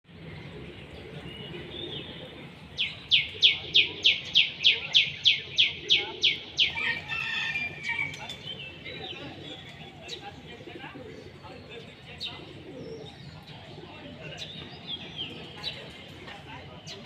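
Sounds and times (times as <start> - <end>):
bird chirps: 0.1 - 7.0
bird calling: 0.1 - 17.0.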